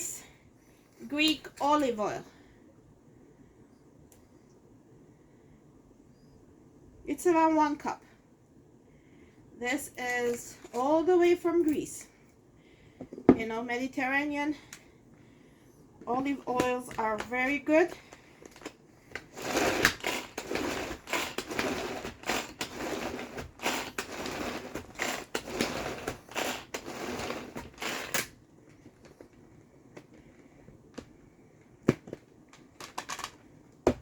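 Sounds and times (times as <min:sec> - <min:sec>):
pull-cord chopper grinding: 0:19.3 - 0:28.3.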